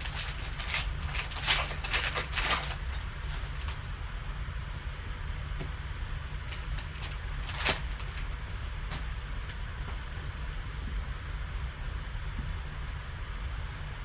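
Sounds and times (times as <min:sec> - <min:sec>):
trading cards and foil wrappers rustling: 0:00.0 - 0:03.8, 0:06.5 - 0:09.1
low background hum: 0:00.0 - 0:14.0.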